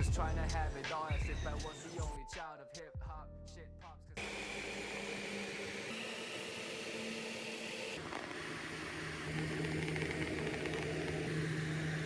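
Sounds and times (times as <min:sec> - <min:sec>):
steady machine hum: 0:04.2 - 0:12.0.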